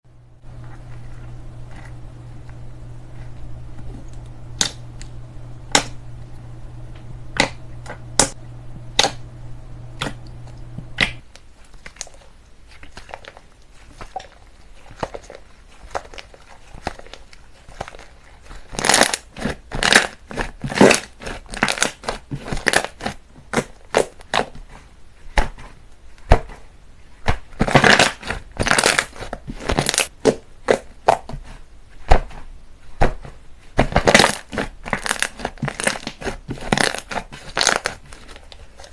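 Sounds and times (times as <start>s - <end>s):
low steady hum: 0.0s - 38.9s
slime popping and crackling: 11.0s - 24.6s, 27.2s - 38.9s.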